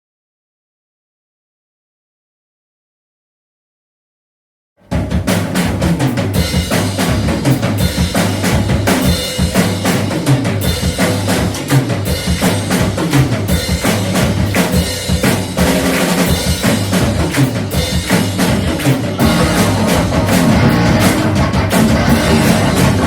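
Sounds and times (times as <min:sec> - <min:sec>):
bass drum and snare hits: 0:04.8 - 0:23.0
live band playing: 0:04.9 - 0:23.0
low bass line: 0:18.0 - 0:23.0.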